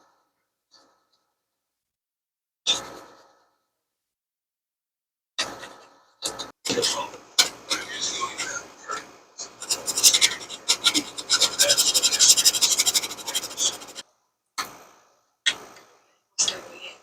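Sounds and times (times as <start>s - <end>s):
file rasping on plastic: 9.6s - 14.0s.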